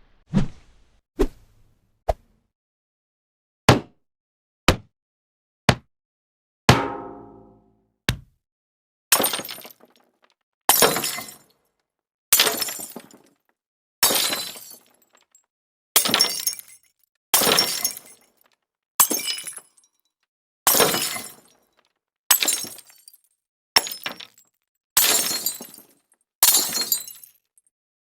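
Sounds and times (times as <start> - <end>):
glass breaking: 9.2 - 10.0, 17.4 - 18.2, 23.8 - 25.9.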